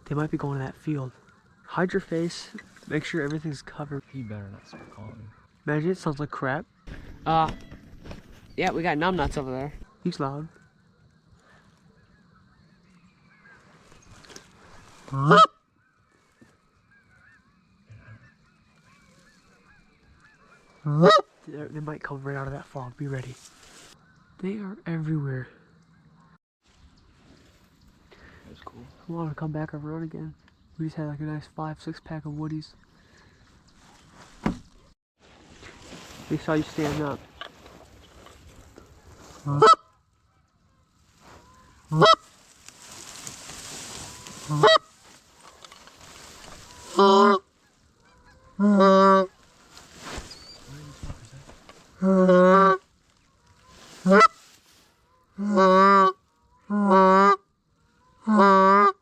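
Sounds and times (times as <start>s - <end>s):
distant geese honking: 6.6s - 21.8s, 36.2s - 59.0s
loud goose honk: 15.1s - 15.6s, 18.0s - 21.3s, 39.4s - 39.9s, 41.4s - 42.3s, 44.0s - 44.9s, 46.7s - 49.4s, 52.0s - 52.8s, 53.6s - 54.4s, 55.1s - 57.4s, 58.0s - 59.0s.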